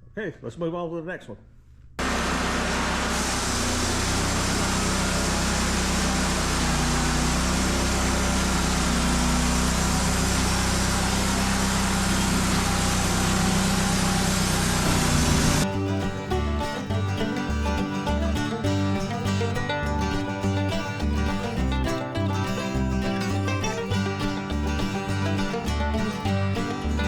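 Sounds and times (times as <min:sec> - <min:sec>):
wide hiss: 0:02.0 - 0:15.6
engine running under load: 0:02.0 - 0:27.0.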